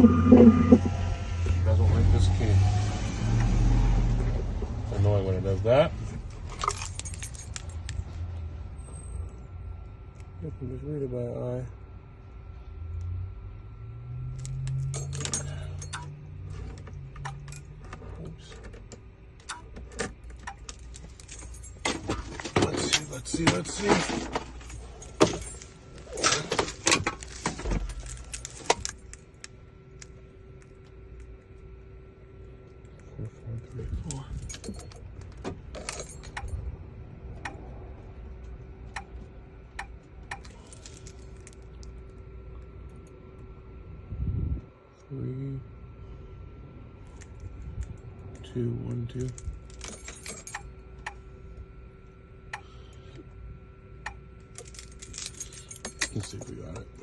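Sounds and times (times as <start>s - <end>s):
low steady hum: 0.0s - 57.0s
car keys clinking: 6.4s - 8.0s, 24.6s - 29.2s, 54.5s - 57.0s.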